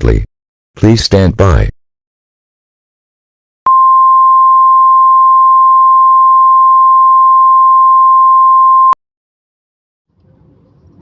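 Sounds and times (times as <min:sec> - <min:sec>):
loud electronic sine tone: 0:03.7 - 0:09.0.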